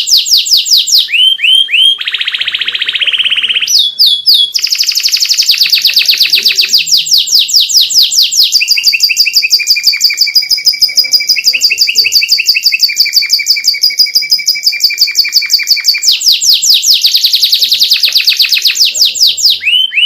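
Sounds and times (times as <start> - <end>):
canary singing trill: 0.0 - 20.0.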